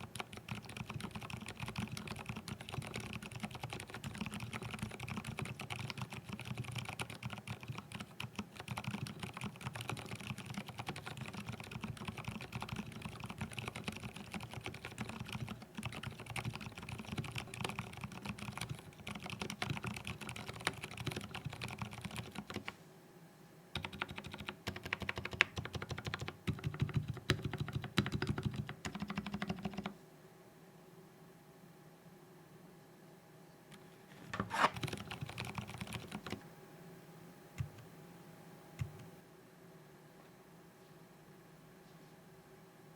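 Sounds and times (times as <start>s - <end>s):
fast typing on mechanical keyboard: 0.0s - 22.7s, 23.8s - 29.9s, 34.8s - 36.4s.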